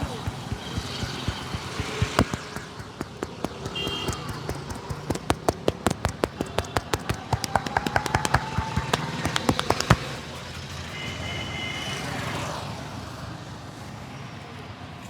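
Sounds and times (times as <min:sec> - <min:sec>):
hands slapping on a head: 0:00.0 - 0:10.2
traffic: 0:00.0 - 0:15.0.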